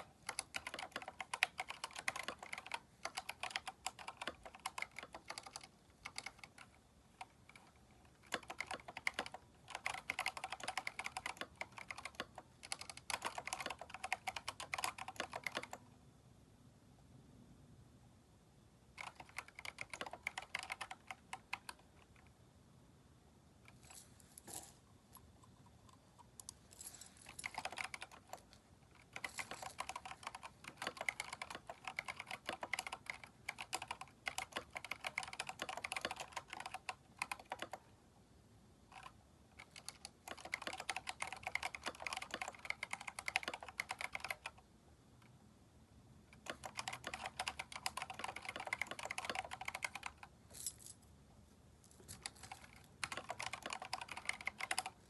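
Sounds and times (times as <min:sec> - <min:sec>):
mechanical keyboard key clicks: 0:00.0 - 0:15.8, 0:19.0 - 0:22.2, 0:27.3 - 0:37.8, 0:39.0 - 0:44.6, 0:46.4 - 0:50.3, 0:52.2 - 0:55.0.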